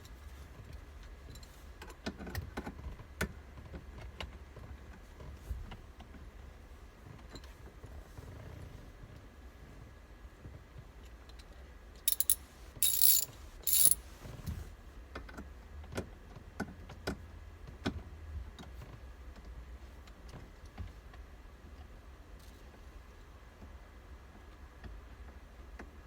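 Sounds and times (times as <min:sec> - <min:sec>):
ratchet tool clicking: 0:12.1 - 0:14.0.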